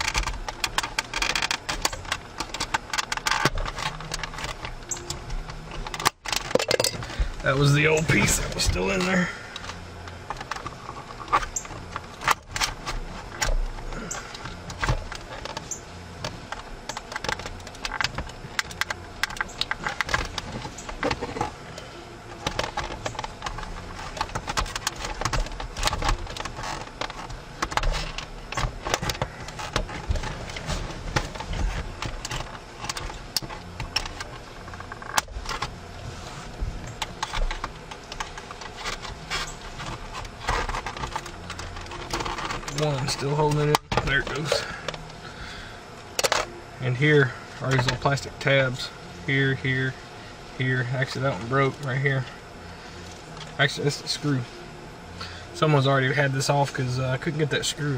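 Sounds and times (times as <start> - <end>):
hard plastic clicks and rattles: 0.0 - 7.0, 22.4 - 35.7, 36.9 - 45.1.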